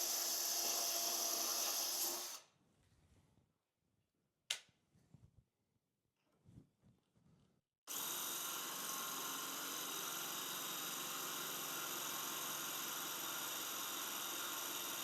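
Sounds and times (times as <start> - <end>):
power drill grinding through tile: 0.0 - 2.4, 7.9 - 15.0.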